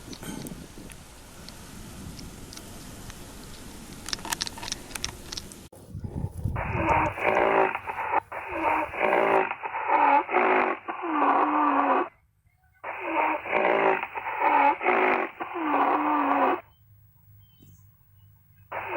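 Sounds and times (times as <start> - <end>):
animal hoarse breathy calls: 6.0 - 12.2, 12.8 - 16.7.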